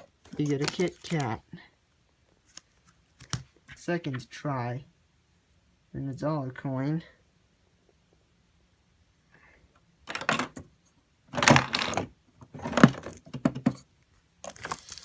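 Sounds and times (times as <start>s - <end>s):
plastic vending machine clattering: 11.3s - 13.8s.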